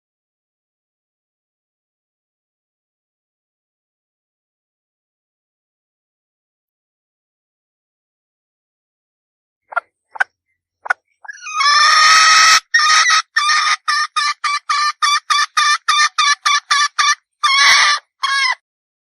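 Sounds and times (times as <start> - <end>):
junglefowl hen calling: 11.2 - 18.6.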